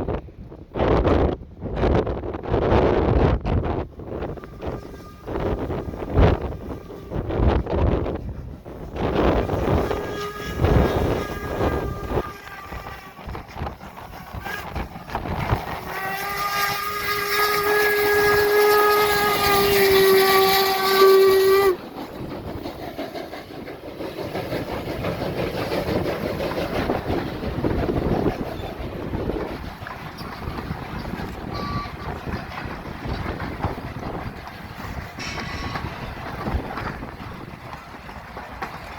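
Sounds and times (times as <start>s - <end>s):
passing train rumbling: 0.0s - 38.9s
wind: 0.0s - 38.9s
steam locomotive whistle: 4.2s - 7.5s, 9.2s - 21.8s, 31.0s - 32.4s, 35.2s - 36.4s.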